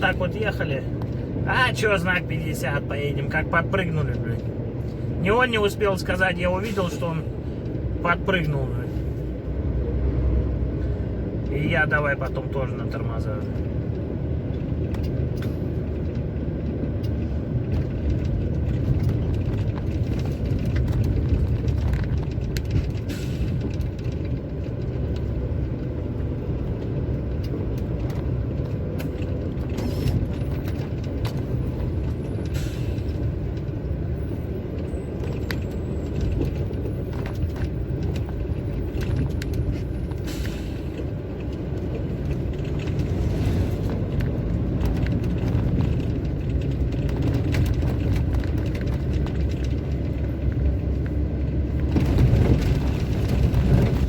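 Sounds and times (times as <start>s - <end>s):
truck engine and road rumble: 0.0s - 54.0s
light clicks and rattles: 11.4s - 54.0s.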